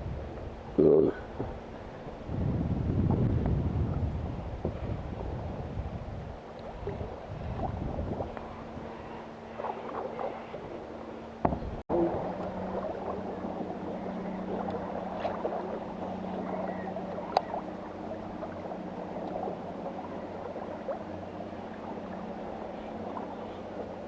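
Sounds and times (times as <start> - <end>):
steady low hum: 0.0 - 24.0
river water gurgling: 6.3 - 24.0.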